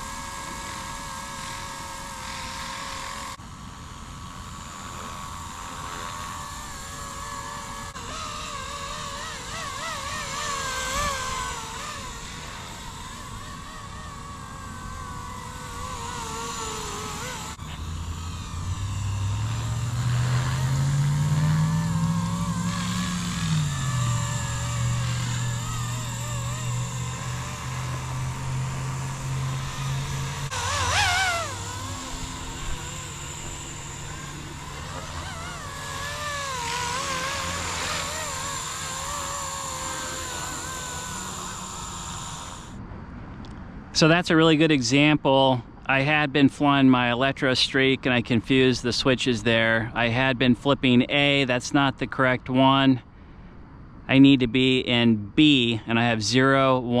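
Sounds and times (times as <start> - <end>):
rc helicopter motor and rotor hum: 0.0 - 45.2.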